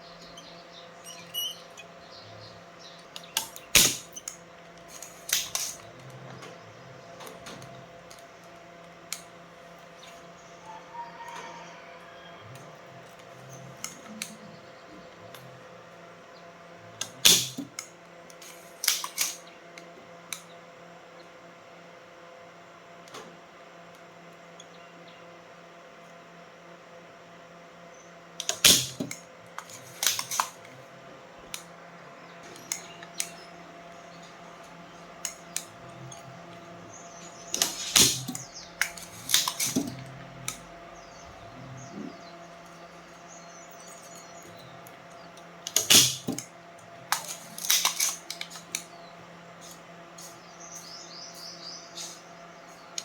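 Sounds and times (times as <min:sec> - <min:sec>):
faint steady hum: 0:00.0 - 0:53.0
tools and metal parts clinking: 0:04.9 - 0:05.8, 0:28.4 - 0:30.6, 0:37.5 - 0:40.0, 0:47.2 - 0:48.7.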